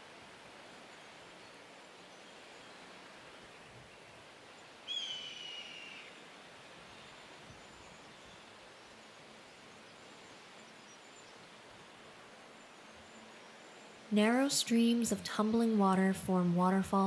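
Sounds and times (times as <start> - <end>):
faint outdoor ambience: 0.0 - 17.0
high bird call: 4.9 - 6.2.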